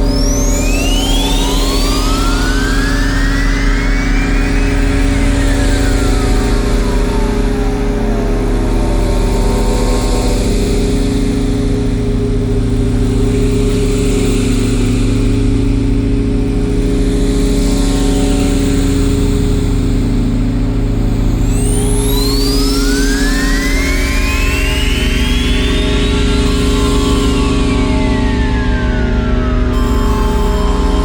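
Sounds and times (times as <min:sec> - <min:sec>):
downward sweeping synth tone: 0:00.0 - 0:11.7, 0:20.6 - 0:31.0
synthesizer drone: 0:00.0 - 0:31.0.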